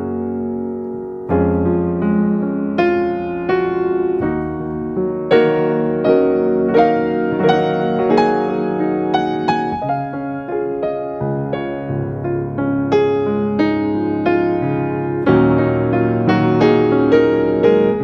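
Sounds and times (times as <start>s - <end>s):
slow piano music: 0.0s - 18.0s.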